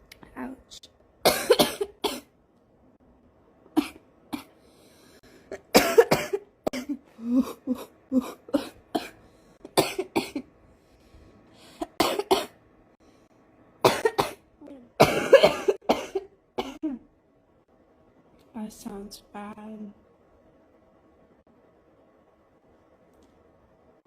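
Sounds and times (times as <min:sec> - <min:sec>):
woman coughing: 0:01.2 - 0:02.3, 0:03.8 - 0:04.5, 0:05.5 - 0:10.5, 0:11.8 - 0:12.6, 0:13.8 - 0:14.4, 0:15.0 - 0:17.0.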